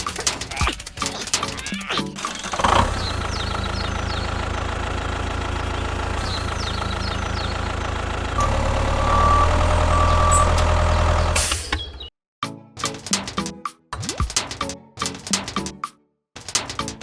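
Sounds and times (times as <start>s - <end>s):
motor humming: 8.4s - 11.4s.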